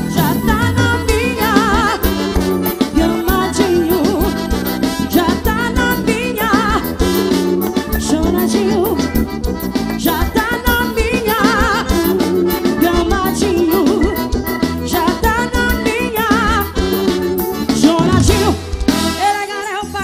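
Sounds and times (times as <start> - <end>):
person singing: 0.0 - 9.3, 9.9 - 16.9, 17.7 - 20.0
steady drum beat: 0.0 - 19.3
accordion: 0.0 - 20.0.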